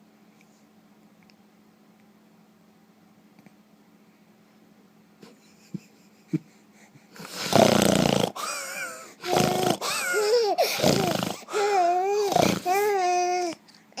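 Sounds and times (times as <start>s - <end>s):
man snoring: 7.2s - 8.4s, 9.2s - 10.2s, 10.8s - 12.9s.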